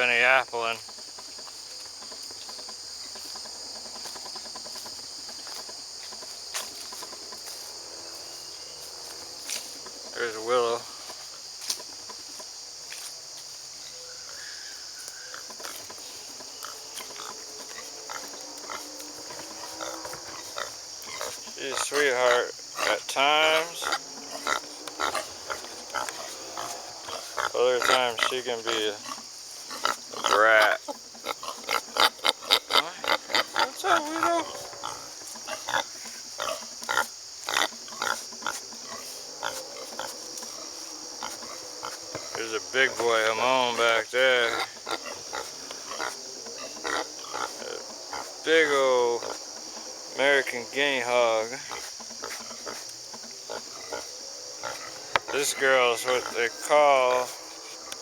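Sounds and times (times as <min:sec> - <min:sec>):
insects chorus: 0:00.0 - 0:58.0
rustles: 0:00.0 - 0:58.0
pig grunting: 0:15.3 - 0:57.4.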